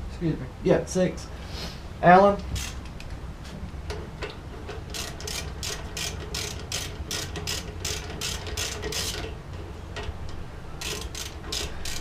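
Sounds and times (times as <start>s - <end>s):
ratchet clicking: 2.4s - 3.1s, 4.8s - 9.4s, 10.0s - 12.0s.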